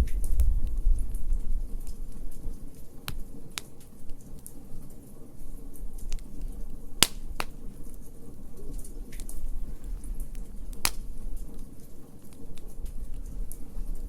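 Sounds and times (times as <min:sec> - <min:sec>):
low steady rumble: 0:00.0 - 0:14.0
wood fire crackling: 0:00.0 - 0:14.0.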